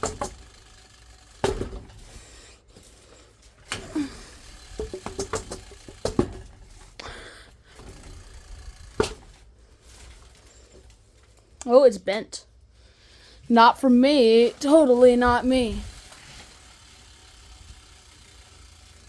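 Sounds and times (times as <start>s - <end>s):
ceiling fan knocking: 4.6s - 6.7s.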